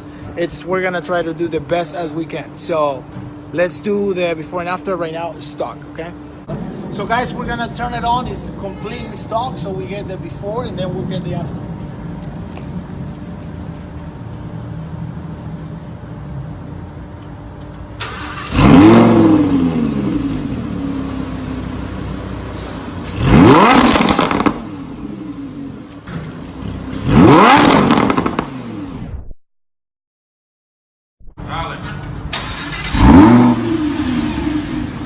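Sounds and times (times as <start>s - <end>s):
car engine idling and revving: 9.3s - 29.1s, 31.6s - 35.0s.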